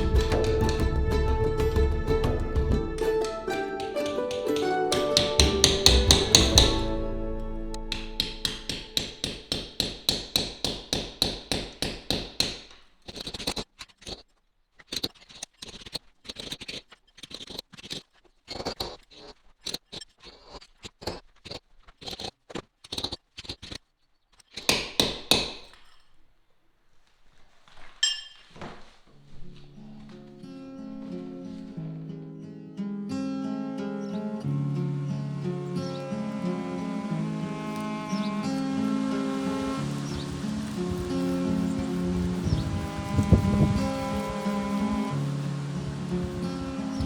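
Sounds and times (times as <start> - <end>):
hammer striking chisel on brick: 3.8 - 7.0, 7.9 - 13.5, 24.6 - 25.9
scraping and clinks: 28.0 - 28.6.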